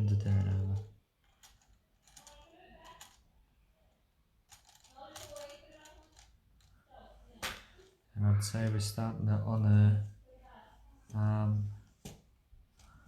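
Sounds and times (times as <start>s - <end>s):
plastic parts clicking and clattering: 0.1s - 3.3s, 4.4s - 6.8s.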